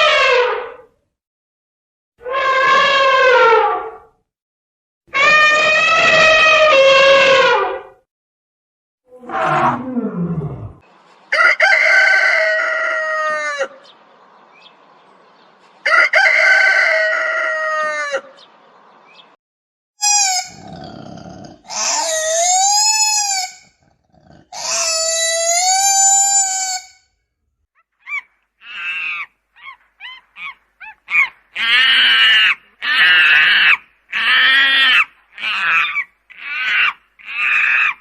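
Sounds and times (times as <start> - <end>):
animal calls: 20.0 - 26.9, 27.8 - 38.0.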